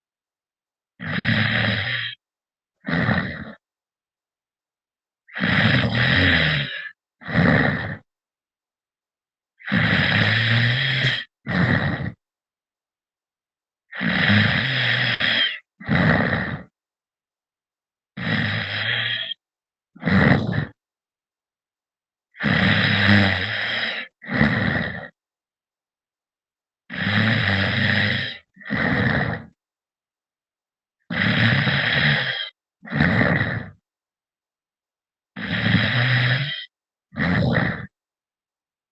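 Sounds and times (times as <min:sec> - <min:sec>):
man snoring over phone: 0:01.0 - 0:03.7, 0:05.2 - 0:08.1, 0:09.6 - 0:12.3, 0:13.9 - 0:16.8, 0:18.2 - 0:19.4, 0:20.0 - 0:20.8, 0:22.3 - 0:25.2, 0:26.9 - 0:29.6, 0:31.0 - 0:33.9, 0:35.3 - 0:38.0.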